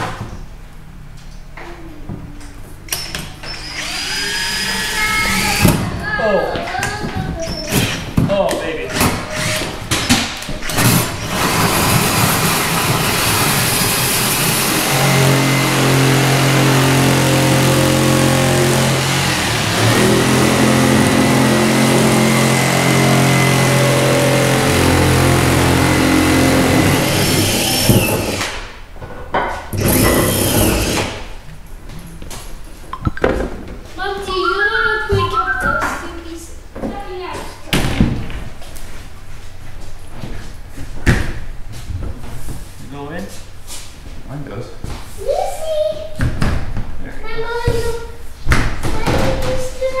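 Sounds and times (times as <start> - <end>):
power tool cutting panel: 3.5 - 5.6, 10.6 - 28.6, 29.8 - 31.3.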